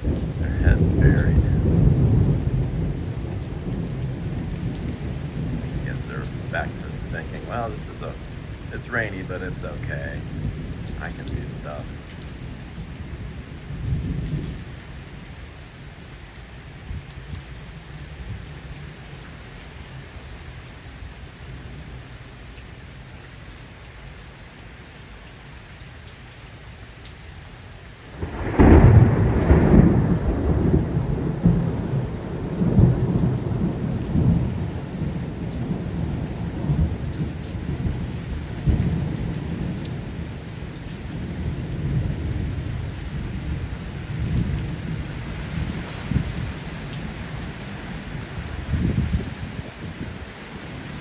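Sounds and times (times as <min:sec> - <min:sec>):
thunderclap rumbling: 0:00.0 - 0:15.1, 0:28.1 - 0:50.8
steady rain: 0:00.0 - 0:51.0.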